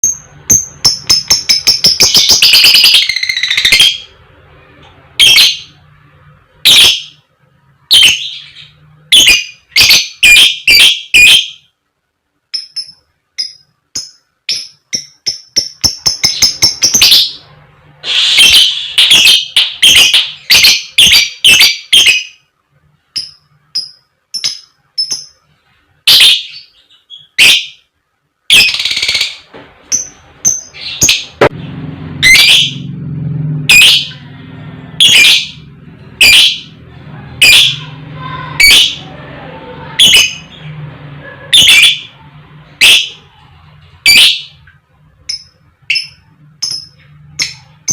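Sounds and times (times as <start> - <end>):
lovebird calls and chirps: 0.0 - 4.2, 5.2 - 5.8, 6.6 - 7.2, 7.9 - 11.7, 12.5 - 17.5, 18.1 - 22.4, 23.1 - 25.4, 26.0 - 27.9, 28.5 - 31.5, 32.2 - 32.9, 33.7 - 34.3, 35.0 - 35.6, 36.2 - 36.8, 37.4 - 39.1, 39.9 - 40.8, 41.5 - 42.2, 42.8 - 43.3, 44.0 - 44.7, 45.3 - 47.9.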